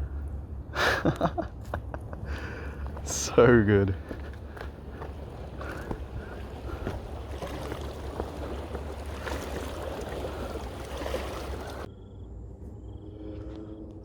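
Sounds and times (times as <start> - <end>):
river water sloshing and trickling: 2.8 - 11.9.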